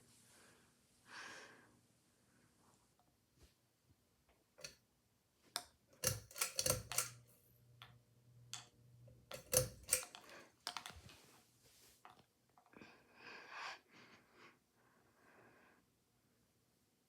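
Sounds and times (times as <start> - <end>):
sharp clicks and knocks: 5.6 - 11.0.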